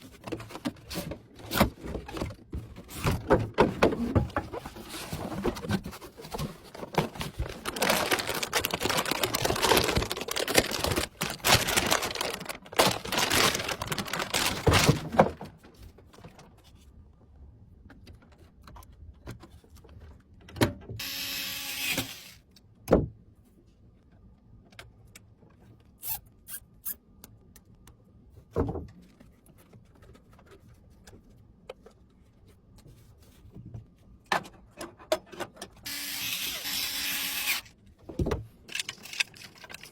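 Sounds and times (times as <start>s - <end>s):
rubbing and rustling: 0.0s - 17.0s.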